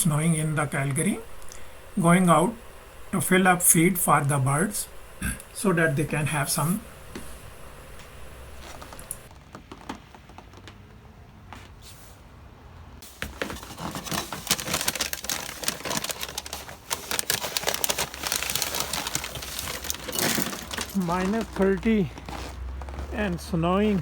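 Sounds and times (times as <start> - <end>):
footsteps crunching on snow: 6.0 - 9.3, 20.8 - 24.0.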